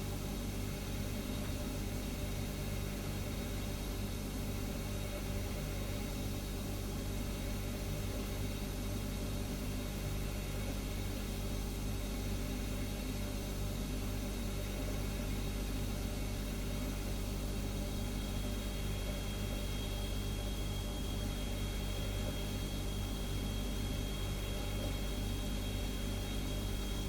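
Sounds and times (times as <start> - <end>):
refrigerator humming: 0.0 - 27.0.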